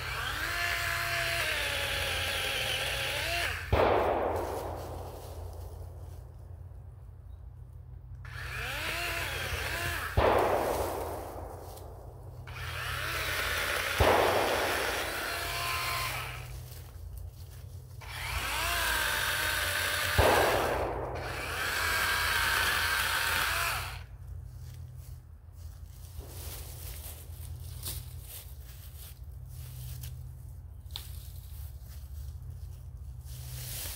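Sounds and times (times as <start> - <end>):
electric chainsaw whining: 0.0 - 3.7, 8.2 - 10.3, 12.5 - 16.6, 18.0 - 24.1
chainsaw cutting wood: 0.0 - 4.0, 8.2 - 11.5, 12.4 - 16.6, 18.0 - 24.1
sharp crack: 3.6 - 6.0, 10.0 - 12.2, 13.6 - 15.2, 20.0 - 21.7.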